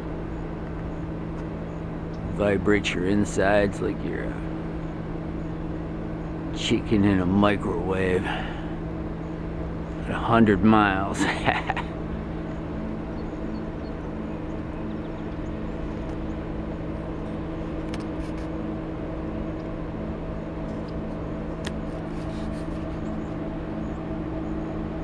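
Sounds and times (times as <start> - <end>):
industrial machinery hum: 0.0 - 25.0
pulsing tone: 12.0 - 25.0.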